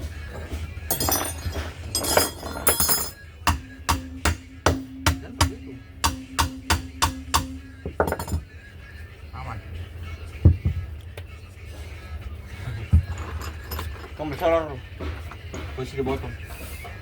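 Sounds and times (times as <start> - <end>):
rough clattering and scraping: 0.2 - 3.2, 12.6 - 17.0
sharp metallic strikes: 3.5 - 7.7.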